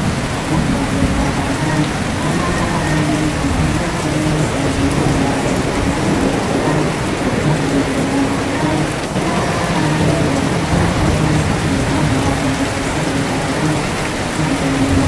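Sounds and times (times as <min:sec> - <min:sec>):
steady rain: 0:00.0 - 0:15.0.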